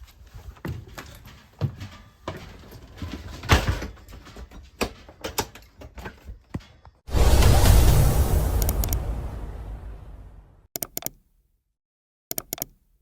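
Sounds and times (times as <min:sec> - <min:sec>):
rushing scrape: 0:07.1 - 0:10.2.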